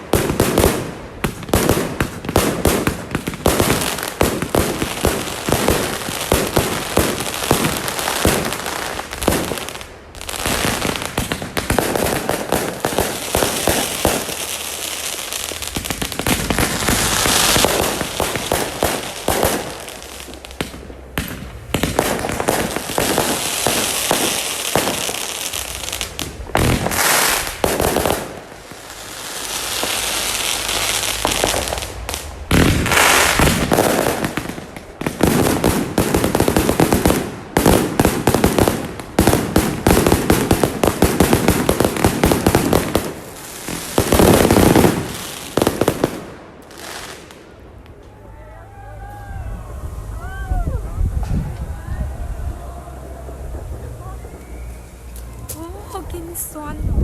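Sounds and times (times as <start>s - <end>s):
fireworks banging and crackling: 0.0s - 57.0s.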